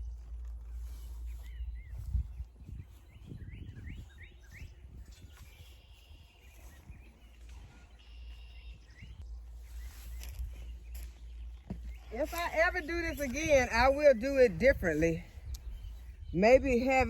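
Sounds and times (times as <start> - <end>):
rustling: 0.0 - 2.1, 9.2 - 16.2
birds chirping: 0.0 - 17.0
wind noise: 0.0 - 17.0.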